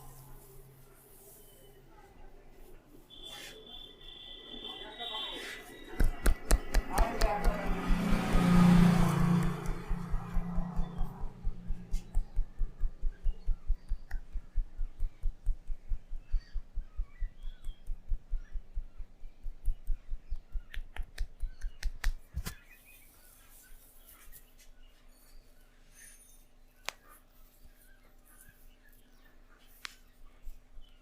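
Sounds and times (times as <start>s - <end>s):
hands tapping in head massage: 6.0s - 22.5s.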